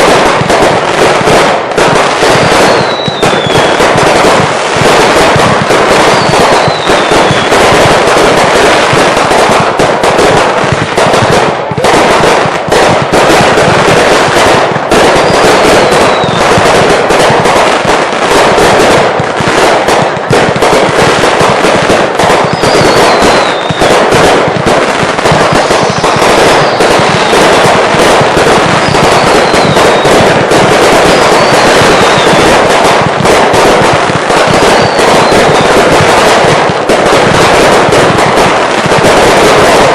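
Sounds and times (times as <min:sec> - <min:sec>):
fireworks bangs and crackling: 0:00.0 - 0:39.9
falling firework whistles: 0:02.2 - 0:04.3, 0:05.3 - 0:07.7, 0:15.0 - 0:16.8, 0:22.2 - 0:24.3, 0:25.3 - 0:27.7, 0:28.6 - 0:32.7, 0:34.5 - 0:36.0.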